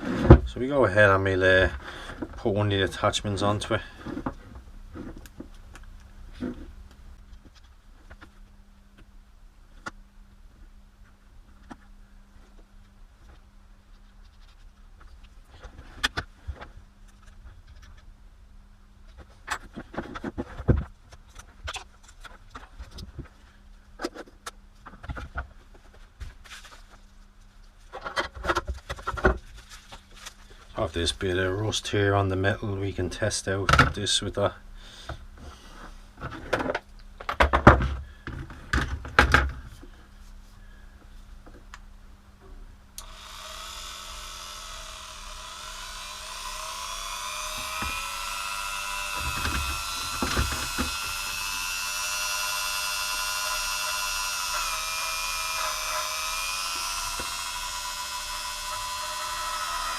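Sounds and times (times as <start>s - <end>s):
rotary tool motor whine: 43.0s - 59.9s.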